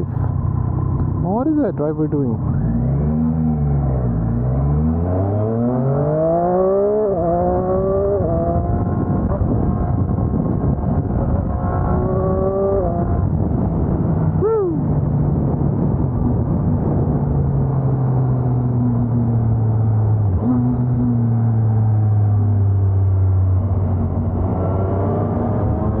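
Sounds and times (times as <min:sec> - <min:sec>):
motorcycle engine: 0:00.0 - 0:26.0
wind rush: 0:07.4 - 0:18.1.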